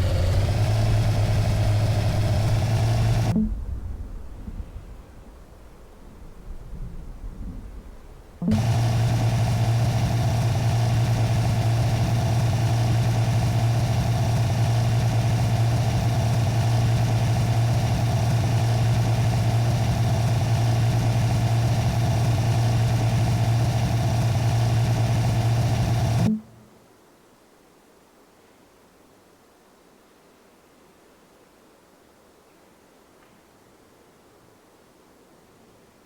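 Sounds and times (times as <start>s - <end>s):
engine idling drone: 0.0s - 3.8s, 8.4s - 26.5s
constant hiss: 24.9s - 36.0s.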